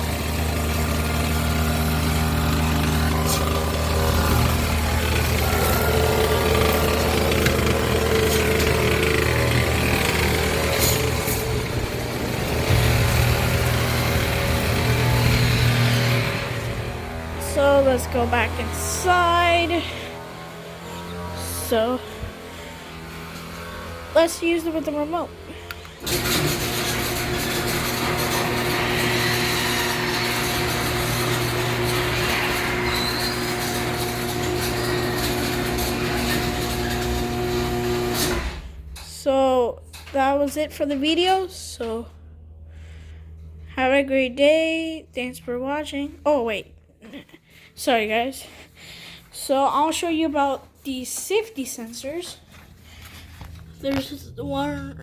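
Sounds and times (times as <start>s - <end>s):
garage door opener motor: 0.0s - 41.8s.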